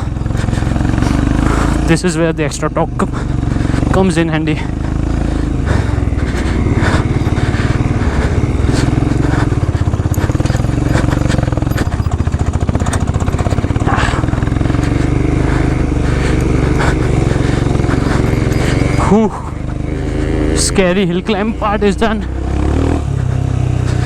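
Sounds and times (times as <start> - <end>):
motorcycle engine pulling uphill: 0.0 - 24.0
sharp clicks and clatter: 3.0 - 20.2.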